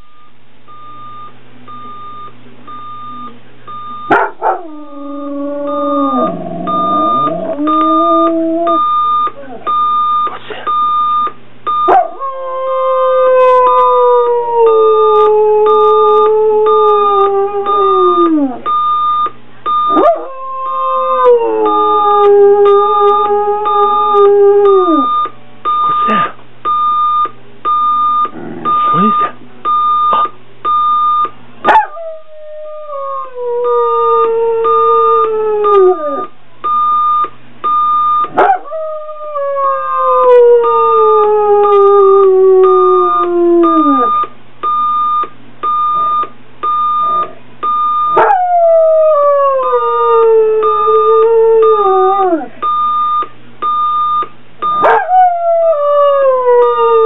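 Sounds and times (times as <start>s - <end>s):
dog howling: 4.1s - 8.8s, 20.0s - 25.1s, 48.2s - 52.6s, 54.8s - 57.0s
dog whimpering: 4.1s - 9.8s
alarm clock beeping: 5.0s - 12.0s, 18.6s - 20.1s, 21.6s - 31.3s, 36.6s - 38.4s, 43.6s - 48.2s, 52.6s - 55.0s.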